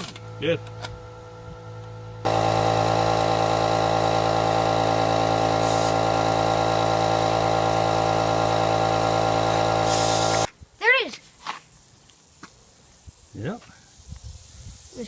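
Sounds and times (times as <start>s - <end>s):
air compressor running: 0.0s - 10.5s
short air hiss: 5.6s - 6.0s, 9.8s - 10.5s.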